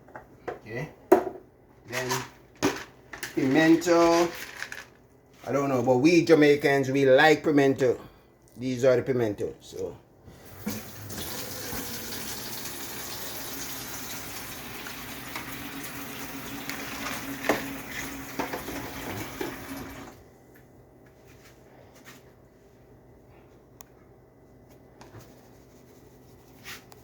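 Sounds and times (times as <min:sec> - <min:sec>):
tap running water into sink: 0:10.5 - 0:20.1.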